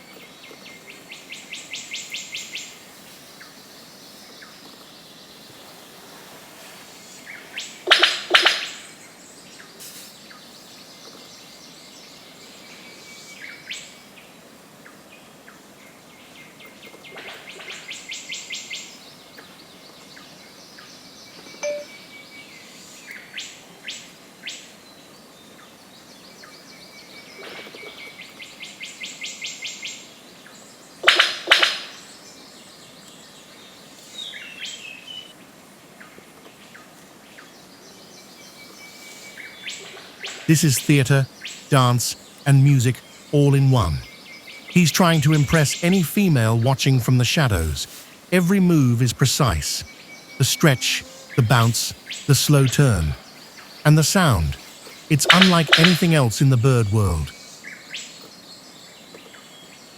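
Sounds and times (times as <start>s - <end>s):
bird calls of rapid high ticks: 7.2s - 9.0s.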